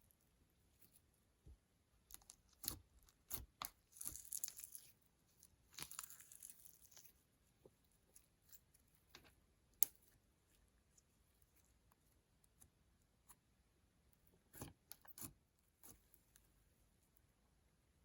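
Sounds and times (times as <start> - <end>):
slime crackling tearing: 5.7 - 7.1.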